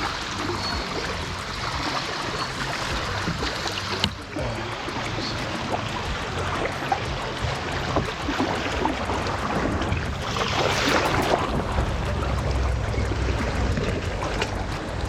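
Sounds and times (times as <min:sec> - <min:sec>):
waves slapping kayak hull: 0:00.0 - 0:15.0.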